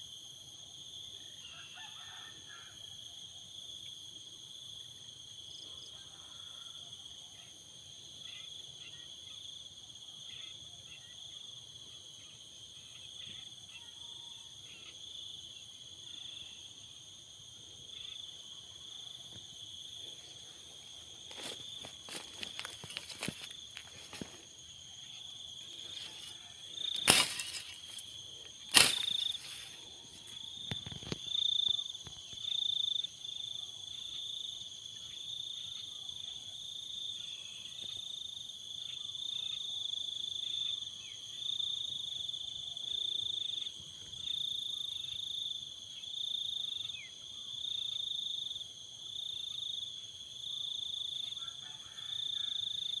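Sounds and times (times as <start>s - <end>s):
insects chirring: 7.8s - 53.0s.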